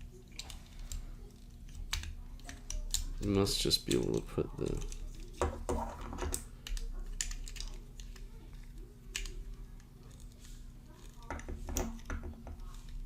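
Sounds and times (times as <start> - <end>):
plastic building pieces clicking: 6.2 - 12.1.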